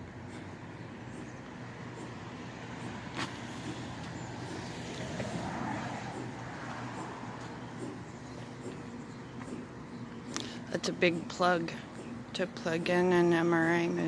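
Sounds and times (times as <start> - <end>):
low machine hum: 0.0 - 14.0
vehicle passing: 1.8 - 9.8.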